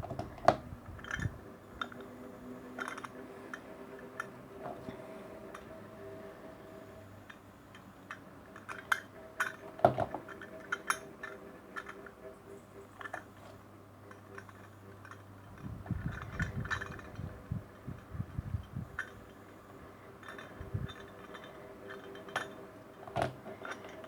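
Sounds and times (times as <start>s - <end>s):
small metallic clicks and clinks: 1.0s - 5.7s, 12.9s - 17.4s, 18.0s - 19.5s, 20.1s - 24.0s.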